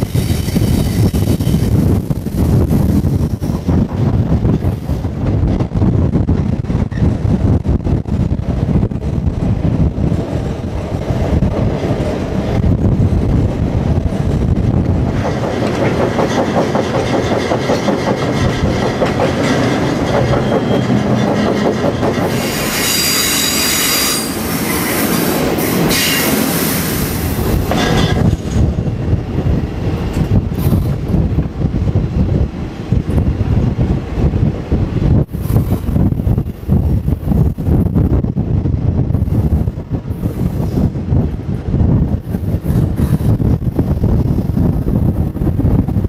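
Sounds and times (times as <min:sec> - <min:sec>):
freight train rumbling on rails: 0:00.0 - 0:46.0
metallic wheel squeal: 0:20.3 - 0:21.2, 0:22.4 - 0:25.1.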